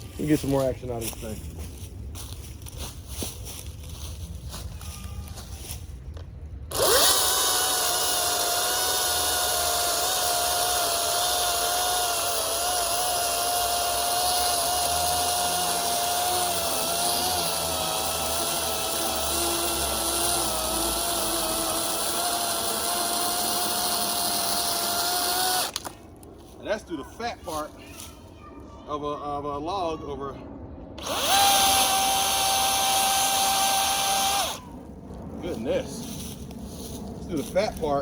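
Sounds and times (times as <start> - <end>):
electric chainsaw whining: 6.7 - 25.9, 31.0 - 34.7.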